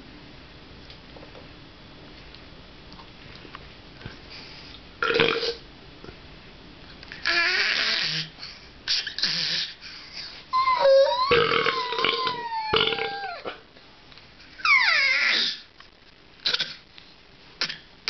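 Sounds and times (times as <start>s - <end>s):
person belching: 5.0s - 5.6s, 11.3s - 13.2s.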